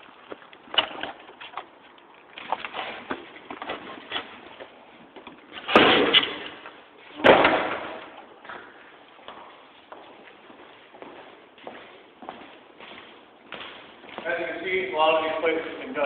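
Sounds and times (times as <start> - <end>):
door banging shut: 5.6 - 6.5, 7.2 - 8.0.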